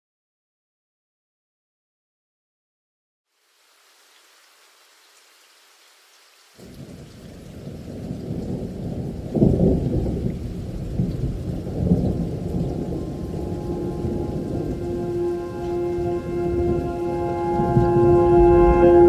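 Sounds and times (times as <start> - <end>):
rain: 3.3 - 19.0
thunder rumbling: 6.6 - 19.0
held music notes: 12.4 - 19.0.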